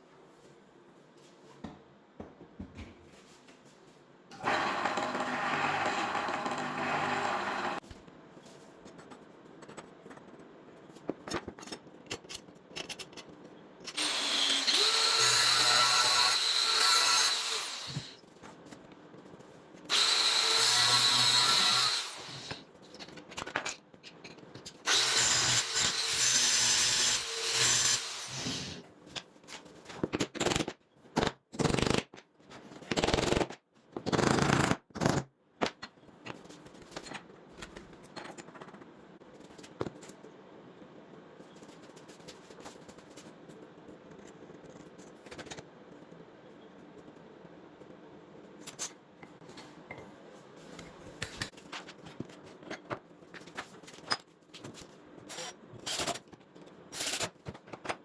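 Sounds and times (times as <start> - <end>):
faint workshop sound: 0.0 - 58.0.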